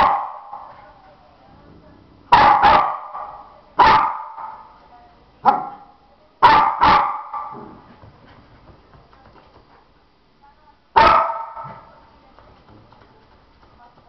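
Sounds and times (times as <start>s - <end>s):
dog barking: 0.0s - 0.9s, 2.3s - 4.7s, 5.4s - 7.8s, 11.0s - 11.9s.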